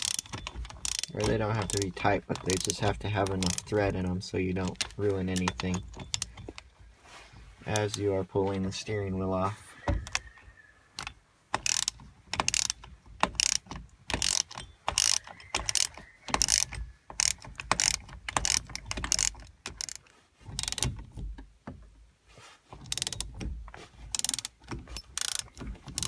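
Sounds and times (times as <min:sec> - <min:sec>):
ratchet wrench clicking: 0:00.0 - 0:03.8, 0:11.0 - 0:20.0, 0:20.6 - 0:20.9, 0:22.8 - 0:23.3, 0:24.1 - 0:26.0.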